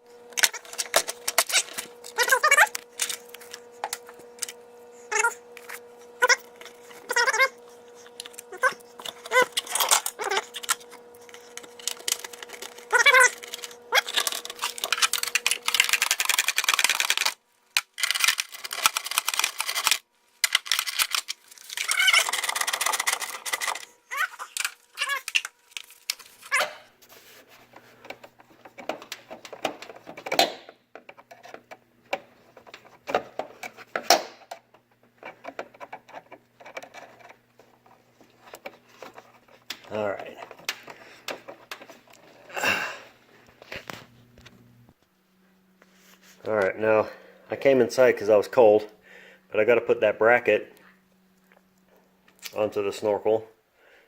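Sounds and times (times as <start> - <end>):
parts being handled and fitted: 24.5 - 42.5.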